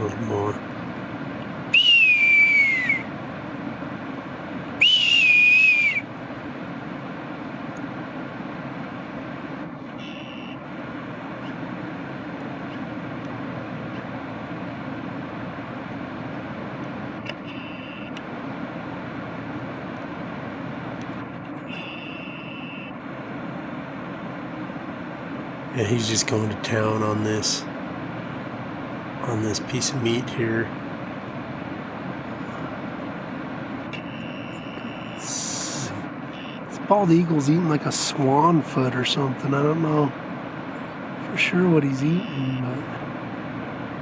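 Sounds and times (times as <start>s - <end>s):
steady low hum: 0.0s - 44.0s
high whistled calls: 1.7s - 3.1s, 4.8s - 6.1s.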